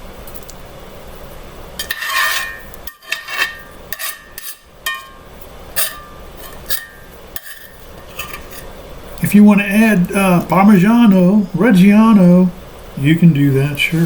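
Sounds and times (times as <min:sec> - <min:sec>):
metal spoon scraping cookware: 0:01.8 - 0:08.7.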